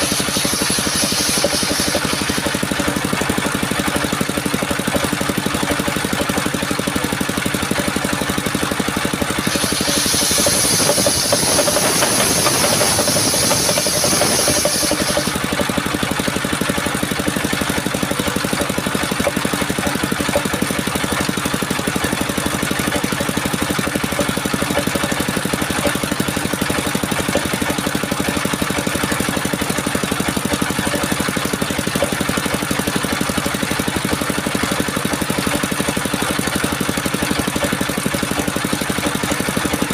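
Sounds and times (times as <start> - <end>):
saw blade hissing through wood: 0.0 - 3.2, 9.2 - 15.6
sawmill engine running: 0.0 - 39.9.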